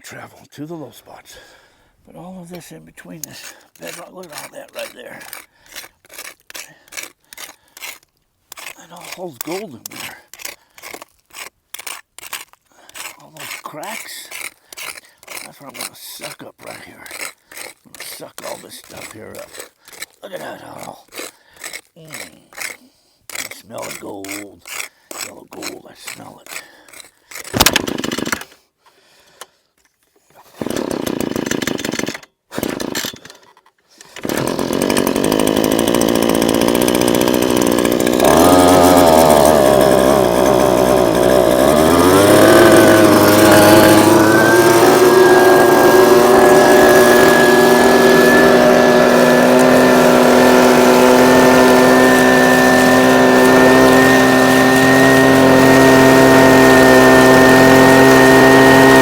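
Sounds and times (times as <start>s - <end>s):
small gasoline engine running: 27.4s - 28.4s, 30.6s - 33.4s, 34.2s - 59.0s.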